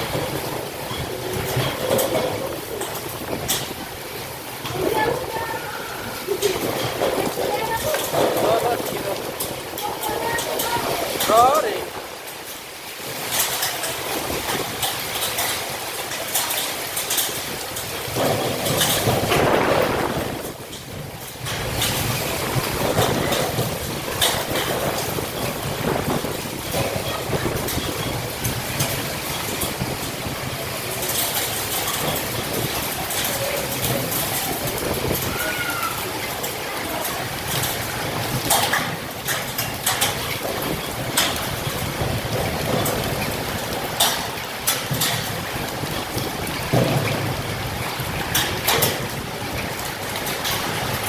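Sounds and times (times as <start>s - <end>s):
rain and wind: 0.0s - 51.0s
scattered crackles: 0.0s - 51.0s.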